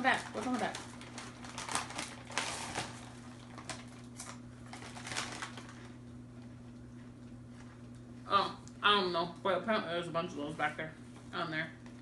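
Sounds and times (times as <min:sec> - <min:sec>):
plastic snack bag crinkling: 0:00.0 - 0:06.6.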